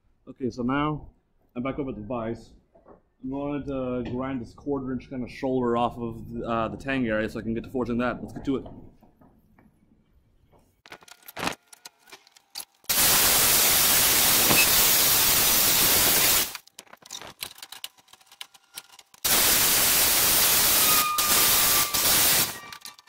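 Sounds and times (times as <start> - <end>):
grinder grinding steel: 12.9 - 16.6, 17.9 - 23.0.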